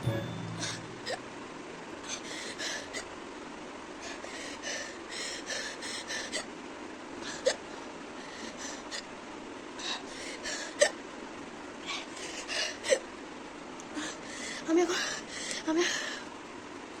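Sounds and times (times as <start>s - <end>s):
noisy breaths: 7.2s - 9.1s, 14.0s - 16.3s.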